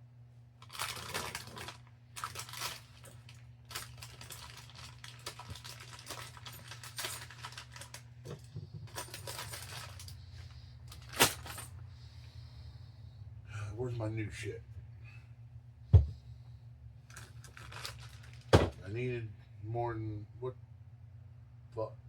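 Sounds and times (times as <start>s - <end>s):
steady low hum: 0.0s - 22.0s
packaging rustling and crinkling: 0.6s - 8.1s, 8.8s - 10.1s, 10.9s - 11.7s, 17.1s - 18.8s.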